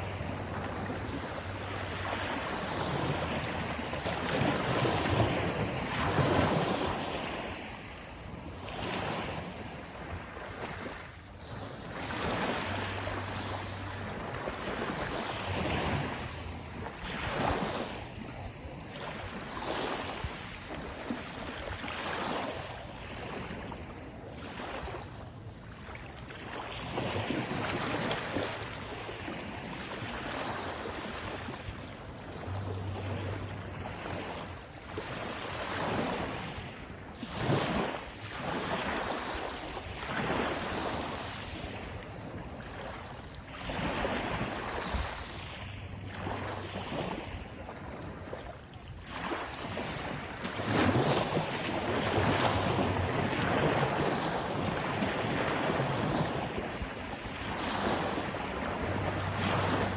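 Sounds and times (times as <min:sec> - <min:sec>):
wind on microphone: 0:00.0 - 0:26.1
sea waves breaking: 0:00.0 - 0:59.9.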